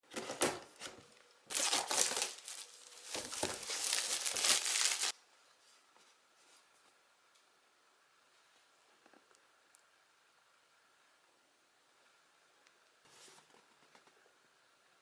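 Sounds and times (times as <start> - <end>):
packaging crinkling and rustling: 1.5 - 5.1.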